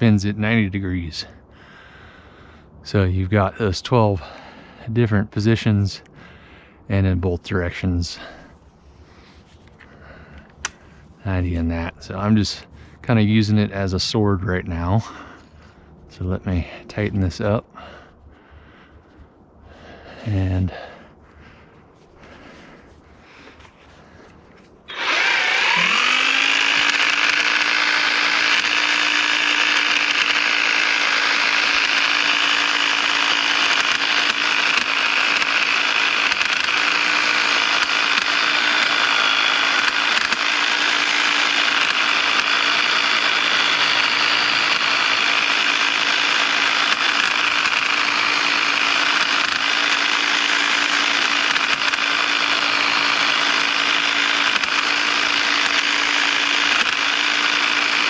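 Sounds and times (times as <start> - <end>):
hedge trimmer humming and whining: 8.2 - 13.0, 19.8 - 58.0.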